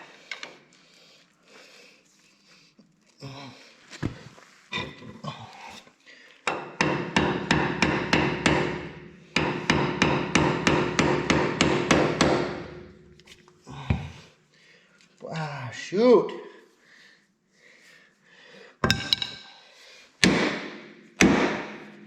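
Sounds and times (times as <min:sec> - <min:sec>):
hammer striking steel: 0:06.6 - 0:12.8, 0:18.8 - 0:19.5, 0:20.2 - 0:22.0.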